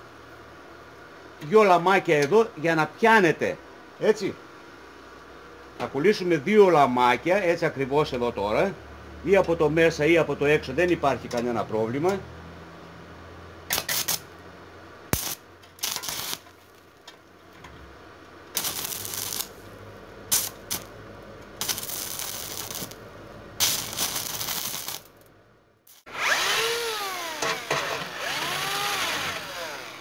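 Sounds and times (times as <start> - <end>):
stick welder crackling: 13.7 - 14.3, 15.1 - 17.7, 18.4 - 20.9, 21.6 - 23.0, 23.6 - 25.3, 25.9 - 30.0
power tool running: 25.9 - 30.0.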